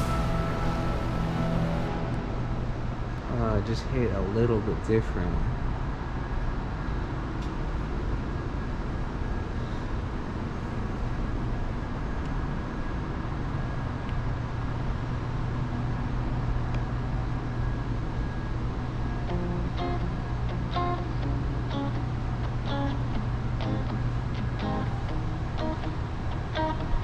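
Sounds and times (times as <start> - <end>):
vehicle engine rumble: 0.0 - 4.0.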